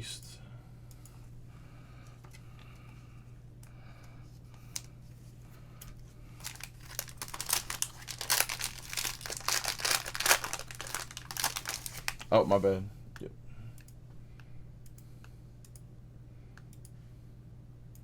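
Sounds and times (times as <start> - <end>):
foil wrappers tearing and crinkling: 6.4 - 12.4.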